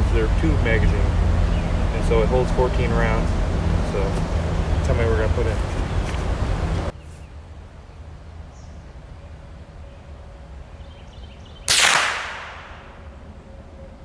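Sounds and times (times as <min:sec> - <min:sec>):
rifle shot: 0:11.7 - 0:13.1.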